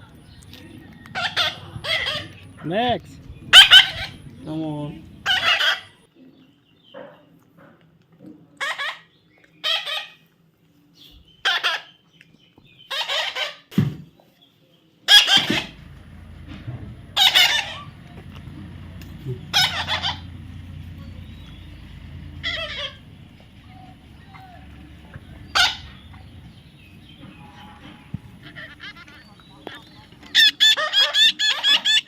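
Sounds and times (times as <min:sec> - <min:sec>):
faint low hum: 0:00.0 - 0:05.9, 0:15.5 - 0:30.3
parrot squawking: 0:01.1 - 0:06.0, 0:15.1 - 0:32.0.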